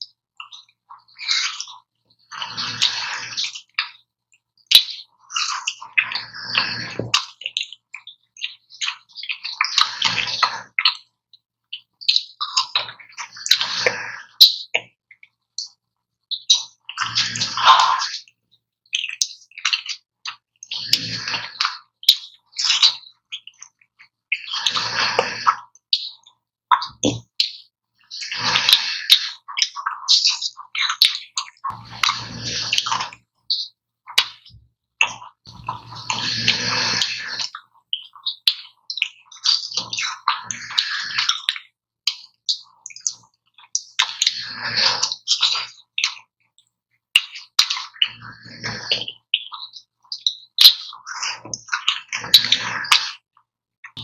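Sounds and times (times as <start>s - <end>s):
wet eating bites and slurps: 30.8s - 34.4s, 35.1s - 37.6s
person snoring: 31.7s - 33.0s, 35.5s - 37.4s.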